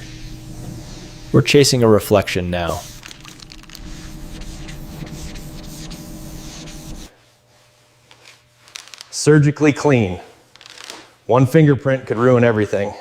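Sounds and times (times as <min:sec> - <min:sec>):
sandpaper rubbing car panel: 0:03.8 - 0:07.1.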